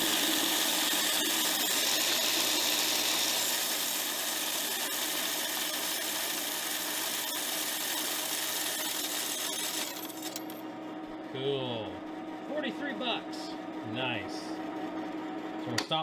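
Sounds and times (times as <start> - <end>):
coin counting machine whirring: 0.0 - 10.6.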